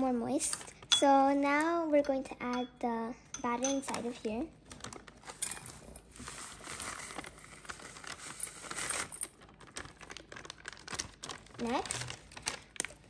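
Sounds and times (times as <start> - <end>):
packet crinkling: 4.6 - 13.0.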